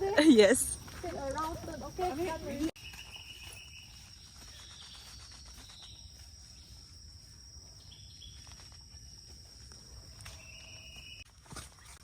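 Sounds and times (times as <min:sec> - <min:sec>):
insects high-pitched drone: 0:01.5 - 0:11.3.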